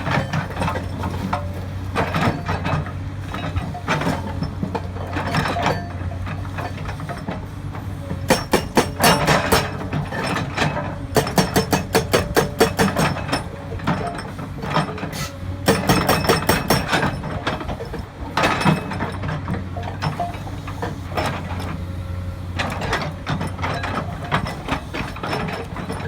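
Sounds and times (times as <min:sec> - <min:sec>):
hydraulic breaker striking rock: 0:08.2 - 0:19.1.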